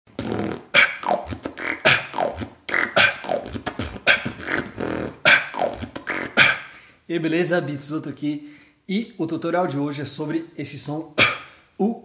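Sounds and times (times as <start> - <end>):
beatboxing: 0.1 - 6.8, 11.2 - 11.5.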